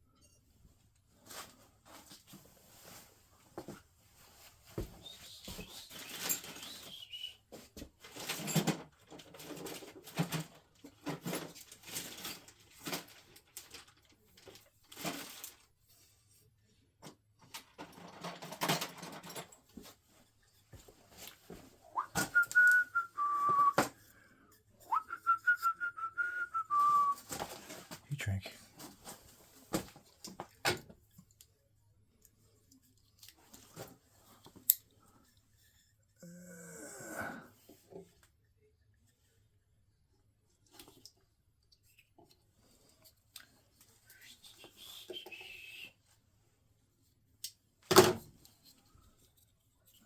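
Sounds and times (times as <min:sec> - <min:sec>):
person whistling: 0:05.0 - 0:07.4, 0:21.9 - 0:23.8, 0:24.8 - 0:27.2, 0:44.1 - 0:46.0.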